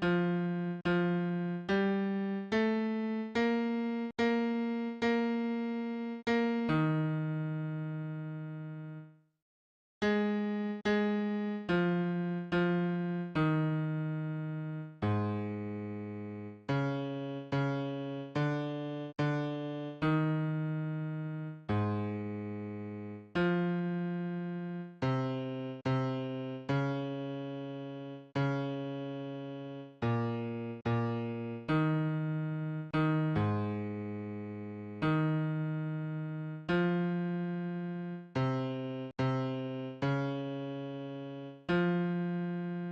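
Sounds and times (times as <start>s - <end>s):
electric piano low notes: 10.4s - 42.9s.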